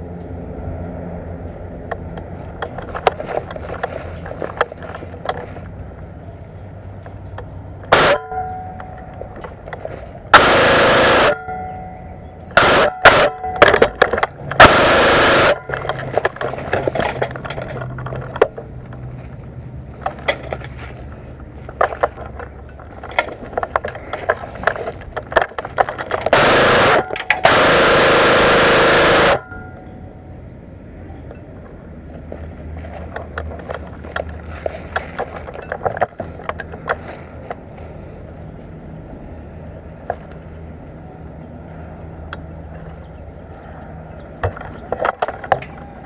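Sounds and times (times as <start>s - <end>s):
airsoft guns firing full-auto bursts: 7.9s - 8.3s, 10.3s - 11.4s, 12.6s - 13.8s, 14.6s - 15.8s, 26.3s - 29.4s.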